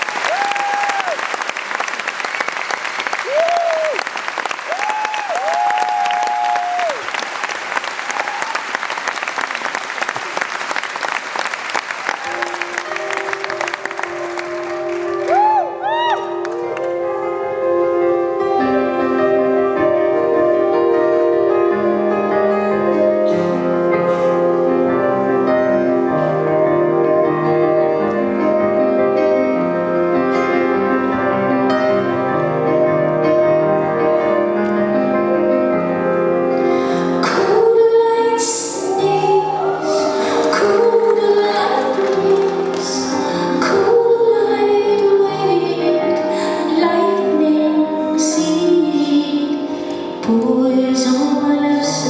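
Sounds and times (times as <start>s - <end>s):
keyboard playing chords: 12.2s - 52.0s
woman singing: 36.9s - 52.0s.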